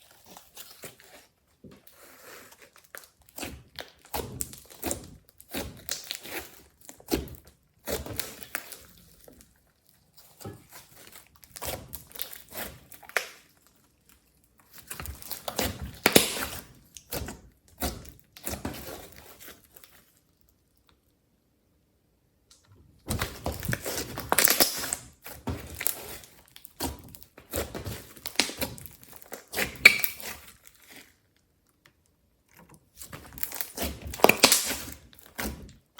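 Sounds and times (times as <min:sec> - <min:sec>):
slime squished by hand: 0:14.7 - 0:20.1, 0:32.6 - 0:35.9.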